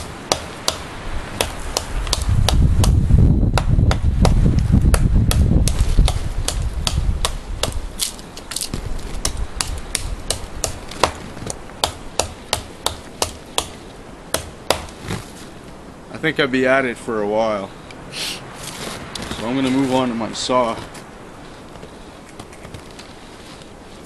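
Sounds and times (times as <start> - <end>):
heavy low rumble: 1.0 - 8.0
knife chopping into wood: 1.4 - 15.0.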